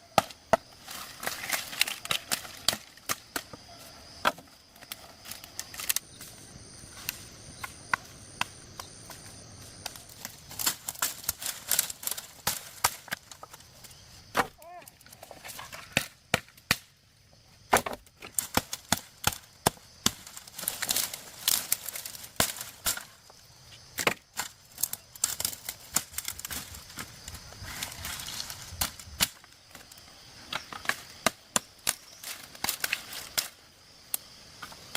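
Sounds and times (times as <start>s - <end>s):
blade chopping wood: 0.1s - 3.6s, 4.2s - 5.0s, 9.8s - 13.6s, 14.3s - 14.6s, 17.7s - 23.1s, 23.9s - 27.1s.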